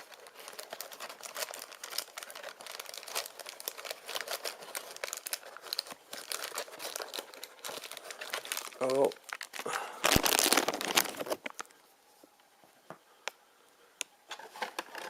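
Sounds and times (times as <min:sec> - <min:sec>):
packaging crinkling and tearing: 0:00.0 - 0:11.8.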